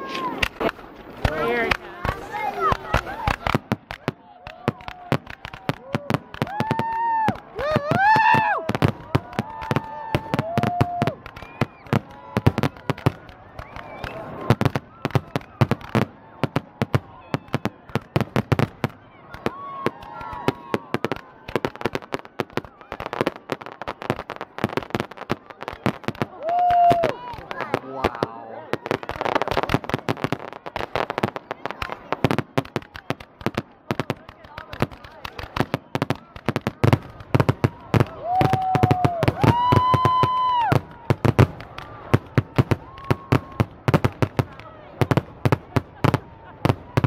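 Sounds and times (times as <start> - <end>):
fireworks bangs and crackles: 0.0 - 47.0
firework whistle: 9.5 - 12.8, 13.6 - 15.8.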